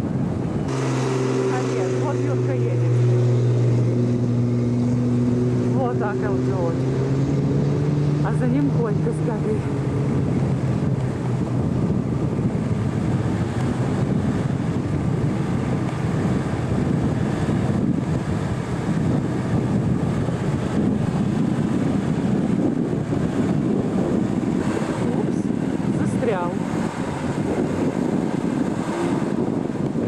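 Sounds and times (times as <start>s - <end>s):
car engine running: 0.0s - 30.0s
wind buffeting microphone: 0.0s - 30.0s.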